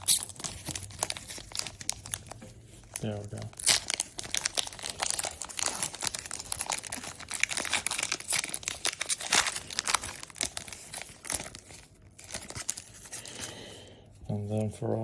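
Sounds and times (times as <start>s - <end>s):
foil wrapper crinkling and tearing: 0.0s - 13.7s.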